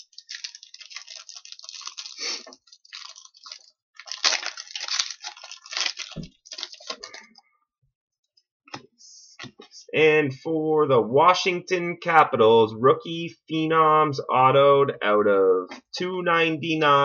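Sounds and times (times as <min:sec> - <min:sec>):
foil wrappers crinkling: 0:00.0 - 0:07.4.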